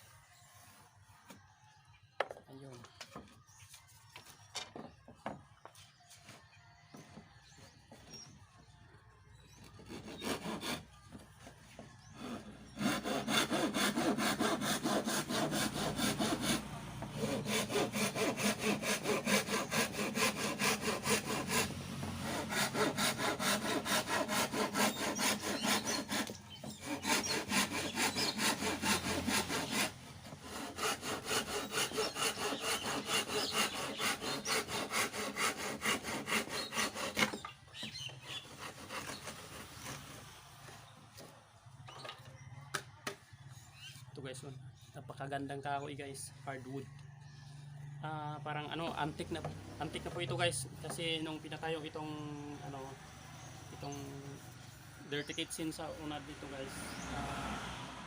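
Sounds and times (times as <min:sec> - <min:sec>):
hand saw cutting wood: 0:09.5 - 0:41.3, 0:53.6 - 0:57.8.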